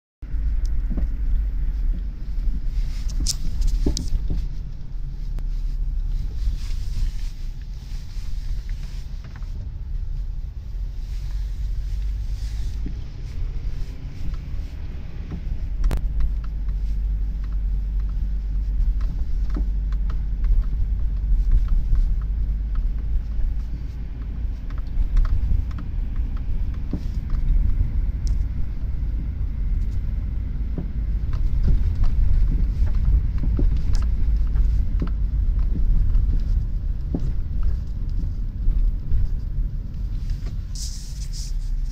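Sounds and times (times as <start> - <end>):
road rumble inside car: 0.2 - 41.9
light interior clicks: 0.3 - 10.0, 11.6 - 41.9.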